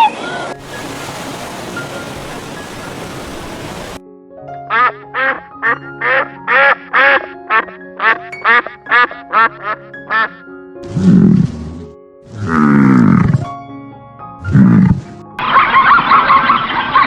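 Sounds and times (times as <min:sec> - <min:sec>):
steady rushing noise: 0:00.6 - 0:04.0
background music with held notes: 0:03.8 - 0:12.4, 0:13.1 - 0:15.6
duck quacking: 0:04.7 - 0:13.3.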